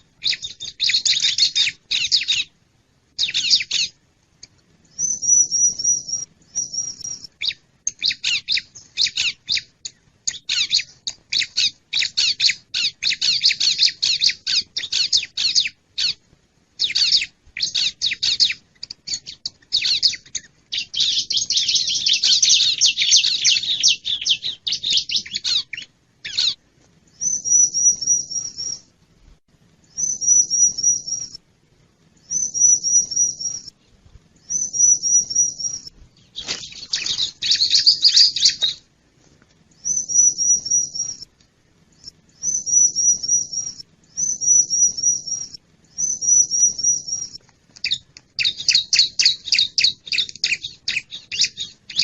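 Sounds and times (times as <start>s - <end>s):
bird scratchy chattering: 36.4s - 38.8s.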